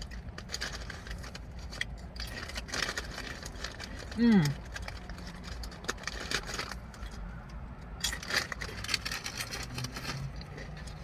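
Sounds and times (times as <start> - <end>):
person chewing crunchy chips: 0.0 - 7.3, 8.0 - 11.0.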